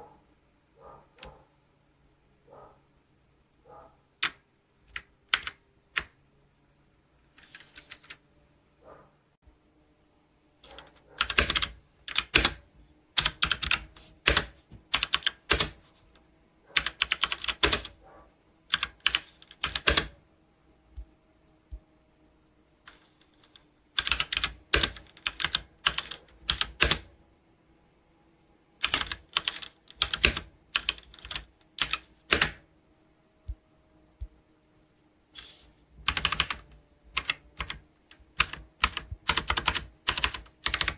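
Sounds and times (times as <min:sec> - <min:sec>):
mechanical keyboard typing: 0:04.2 - 0:06.2, 0:07.3 - 0:08.2, 0:10.6 - 0:12.6, 0:13.2 - 0:16.0, 0:16.8 - 0:18.0, 0:18.7 - 0:20.2, 0:22.8 - 0:27.1, 0:28.8 - 0:32.7, 0:36.0 - 0:40.9.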